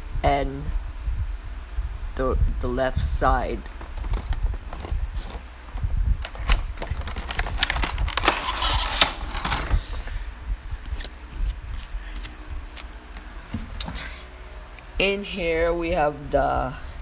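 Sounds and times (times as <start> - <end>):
cardboard scraping and rustling: 3.6 - 12.4.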